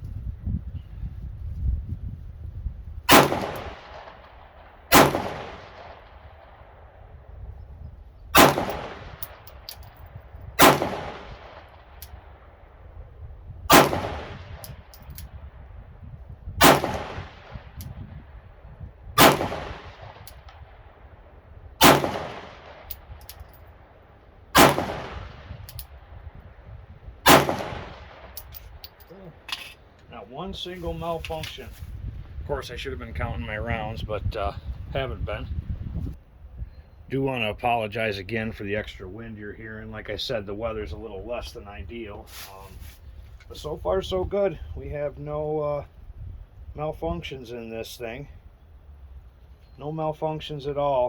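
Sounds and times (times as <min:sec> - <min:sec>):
wind rumbling on microphone: 0:00.0 - 0:50.7
pistol shots echoing: 0:03.1 - 0:04.3, 0:04.9 - 0:06.2, 0:08.4 - 0:09.7, 0:10.6 - 0:12.0, 0:13.7 - 0:14.7, 0:16.6 - 0:17.7, 0:19.2 - 0:20.3, 0:21.8 - 0:23.2, 0:24.5 - 0:25.5, 0:27.2 - 0:28.4.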